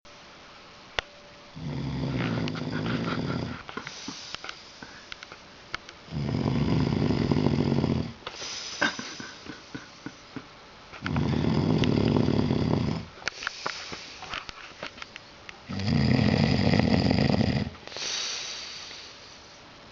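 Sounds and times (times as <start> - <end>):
man snoring: 1.5 - 3.9, 6.1 - 8.2, 11.0 - 13.1, 15.7 - 18.8
quiet breathing: 1.6 - 10.4, 11.0 - 15.8, 17.7 - 19.9.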